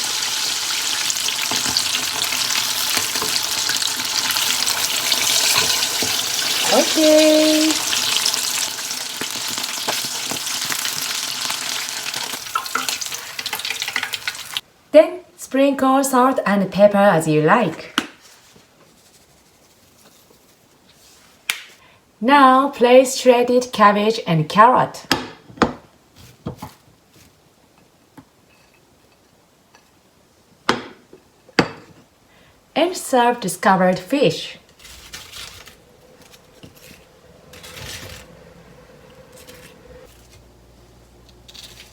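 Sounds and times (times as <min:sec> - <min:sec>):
fish deep-frying in oil: 0:00.0 - 0:14.6.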